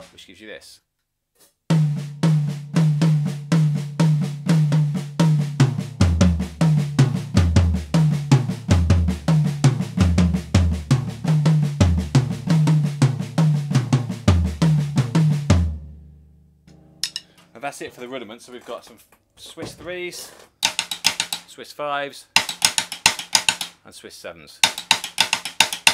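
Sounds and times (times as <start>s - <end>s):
deeper drum strokes: 1.7s - 15.9s
snare drum flam triplets: 1.7s - 15.9s, 20.6s - 21.5s, 22.4s - 23.8s, 24.6s - 25.9s.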